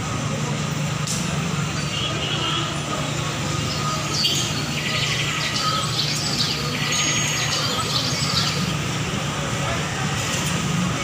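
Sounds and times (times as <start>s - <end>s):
low hum of city traffic: 0.0s - 11.0s
birds chirping: 1.7s - 9.0s.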